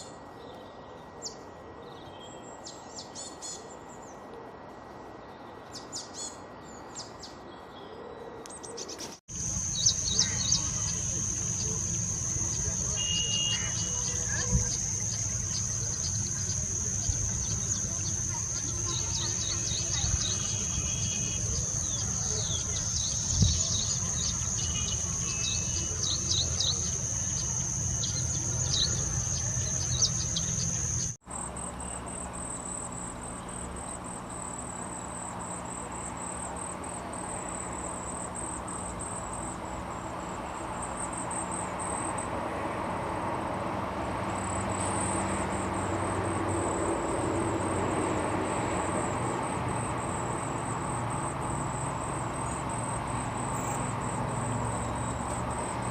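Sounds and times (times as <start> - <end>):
bird chirps: 5.6 - 31.2
pulsing insect trill: 9.3 - 42.3, 44.3 - 55.9
insects chirring: 9.3 - 42.4, 43.1 - 55.9.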